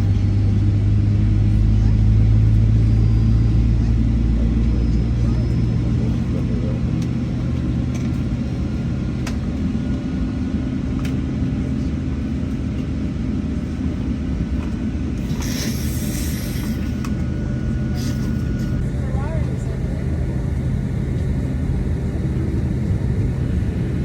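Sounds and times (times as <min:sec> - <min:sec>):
aircraft cabin engine rumble: 0:00.0 - 0:24.0
brief hiss: 0:15.2 - 0:16.9.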